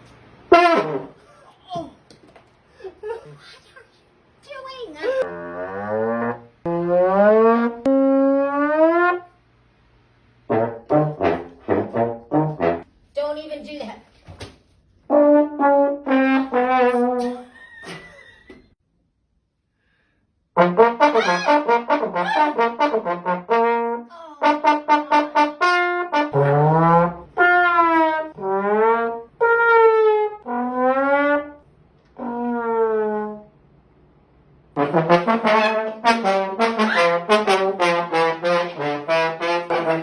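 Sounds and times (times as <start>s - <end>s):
trombone-like brass notes: 0.5s - 1.2s, 5.2s - 9.4s, 10.5s - 12.9s, 15.1s - 17.4s, 20.6s - 31.6s, 32.2s - 33.6s, 34.8s - 40.0s.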